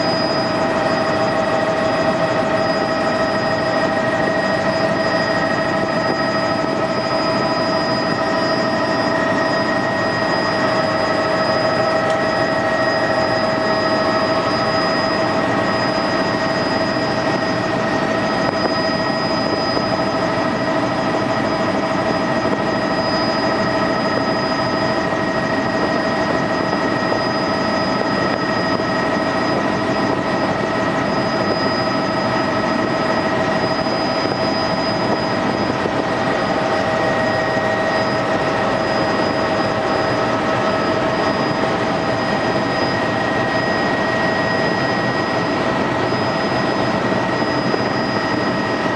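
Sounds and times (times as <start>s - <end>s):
helicopter engine and rotor: 0.0s - 48.9s
whining tones: 0.0s - 48.9s.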